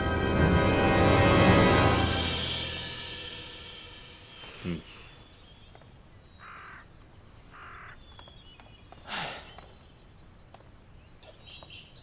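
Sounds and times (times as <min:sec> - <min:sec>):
faint birdsong: 0:03.8 - 0:12.0.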